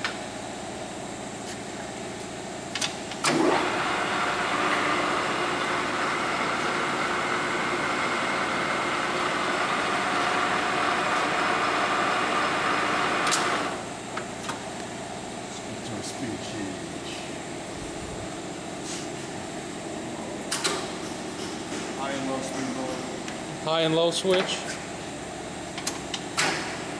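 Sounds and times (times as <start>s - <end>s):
lathe motor running with gear whine: 3.2s - 13.9s.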